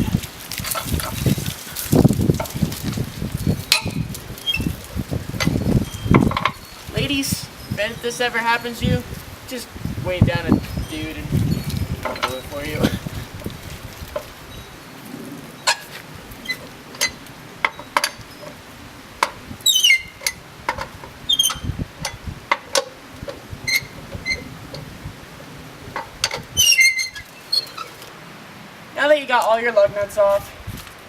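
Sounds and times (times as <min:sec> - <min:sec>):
short squeaks falling in pitch: 0:19.6 - 0:20.3, 0:21.3 - 0:21.7, 0:23.7 - 0:24.5, 0:26.6 - 0:28.0.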